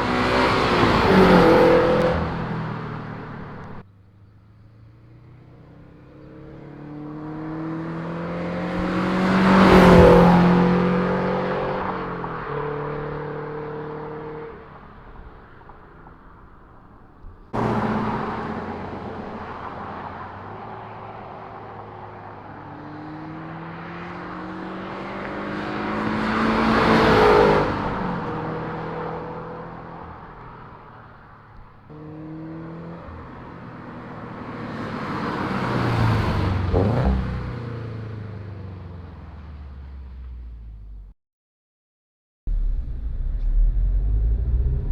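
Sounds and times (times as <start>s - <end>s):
car exhaust accelerating past: 5.9s - 25.4s, 42.5s - 44.9s.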